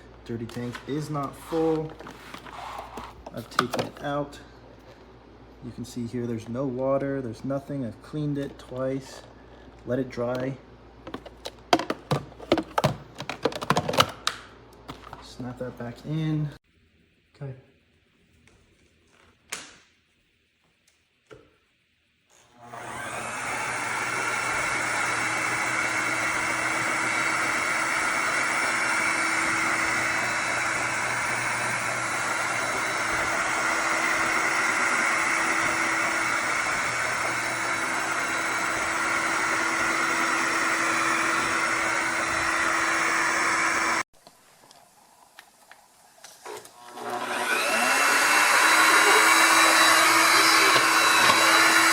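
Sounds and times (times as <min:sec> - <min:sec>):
vacuum mop whining: 0:00.0 - 0:04.0, 0:22.4 - 0:44.0, 0:46.2 - 0:51.9.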